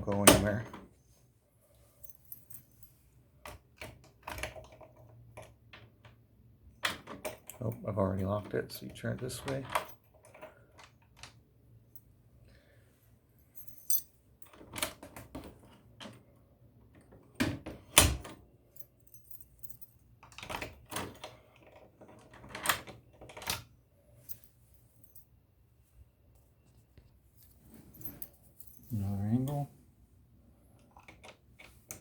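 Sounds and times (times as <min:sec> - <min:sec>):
key turning in old lock: 0:20.2 - 0:23.7.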